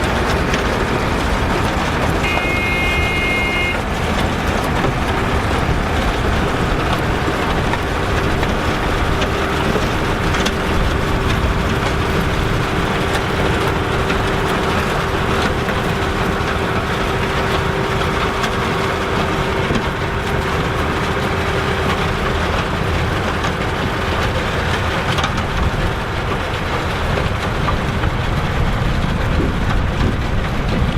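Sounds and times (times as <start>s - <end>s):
tractor diesel engine running: 0.0s - 30.9s
faint held tone: 2.2s - 3.8s.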